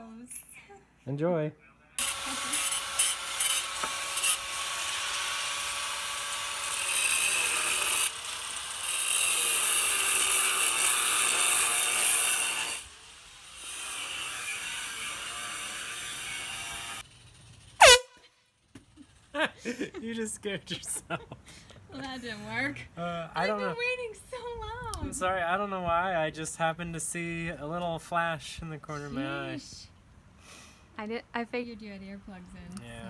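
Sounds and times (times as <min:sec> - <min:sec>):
power tool running: 0:02.0 - 0:18.0.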